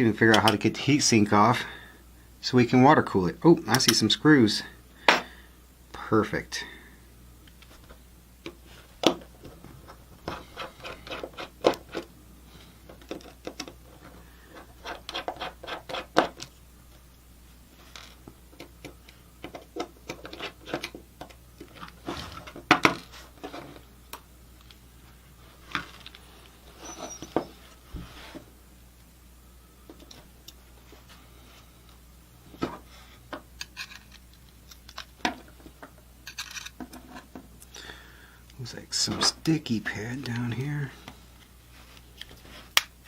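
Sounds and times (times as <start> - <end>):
parts being handled: 17.8 - 28.5, 29.8 - 37.7.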